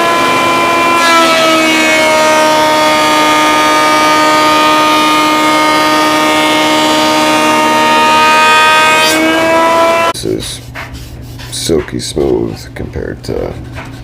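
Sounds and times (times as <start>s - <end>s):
jointer motor whine: 0.0s - 10.2s.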